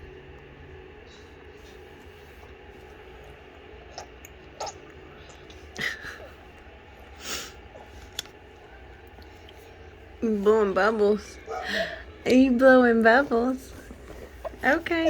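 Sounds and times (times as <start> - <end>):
baby blowing bubbles: 3.7 - 5.8.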